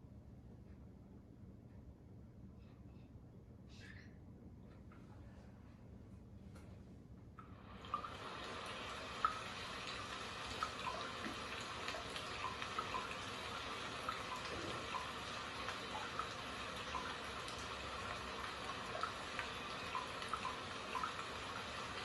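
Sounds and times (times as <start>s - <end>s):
trickling water: 7.4s - 22.0s
water drips and plinks: 7.4s - 22.0s.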